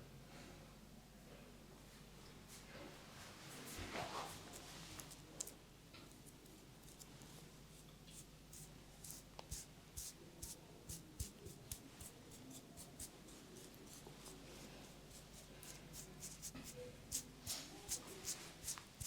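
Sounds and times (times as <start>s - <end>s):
fingers scratching through hair: 8.2s - 19.0s.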